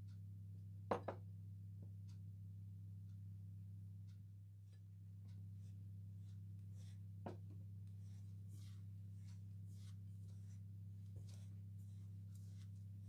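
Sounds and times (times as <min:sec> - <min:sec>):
low electrical hum: 0:00.0 - 0:13.0
faint scraping strokes: 0:05.5 - 0:13.0.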